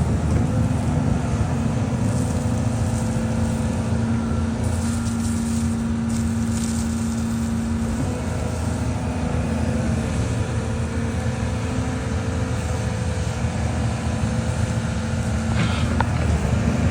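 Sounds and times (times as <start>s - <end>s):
heavy machinery engine running: 0.0s - 16.9s.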